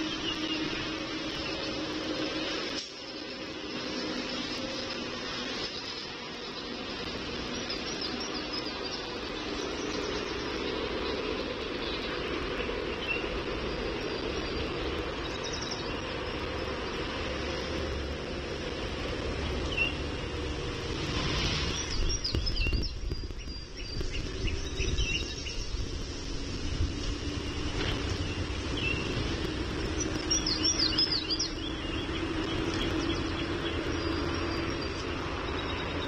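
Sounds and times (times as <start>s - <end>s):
distant mechanical rumble: 0.0s - 36.0s
outdoor background hum: 0.0s - 36.0s.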